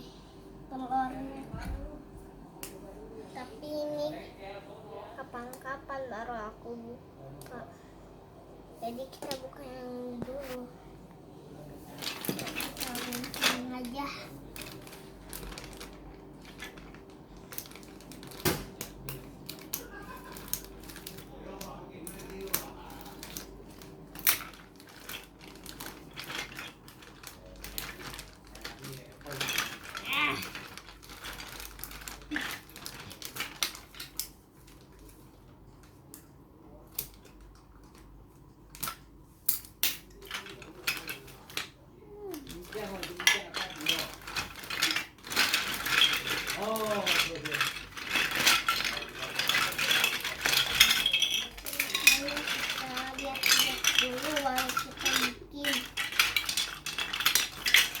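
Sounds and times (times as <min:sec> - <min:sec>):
packaging clicking and crinkling: 0:11.9 - 0:35.1, 0:42.3 - 0:58.0
plastic pieces clattering: 0:12.0 - 0:35.1, 0:38.7 - 0:58.0.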